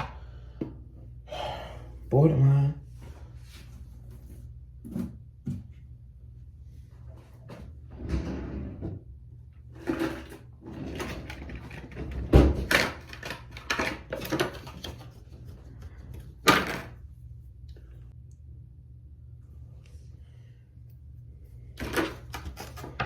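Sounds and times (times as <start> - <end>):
objects clattering and knocking: 9.8 - 17.0, 21.7 - 23.0.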